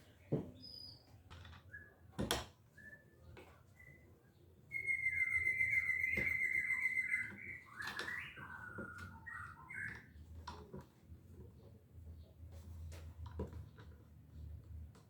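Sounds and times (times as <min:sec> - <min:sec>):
bird singing: 0:00.2 - 0:01.1, 0:02.8 - 0:10.2.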